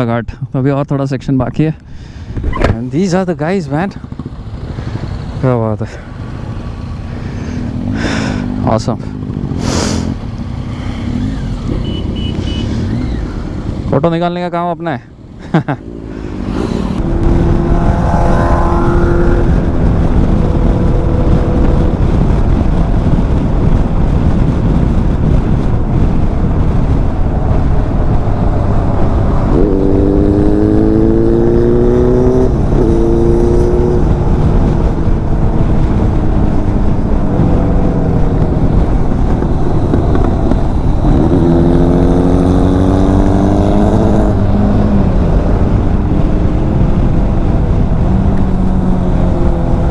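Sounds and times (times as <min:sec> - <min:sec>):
motorcycle engine riding: 0:02.2 - 0:49.9
wind rush on microphone: 0:16.2 - 0:49.9.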